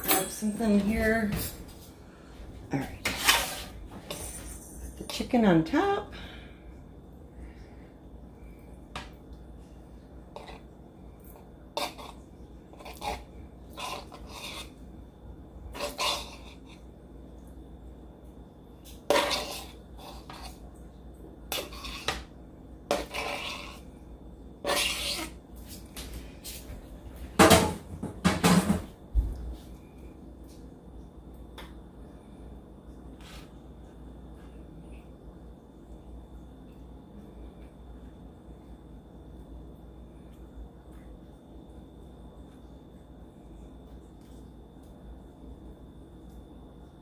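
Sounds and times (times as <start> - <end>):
kitchen utensils clinking and scraping: 0.0 - 1.7, 2.8 - 5.4, 15.7 - 16.7, 19.1 - 20.6, 24.6 - 25.4.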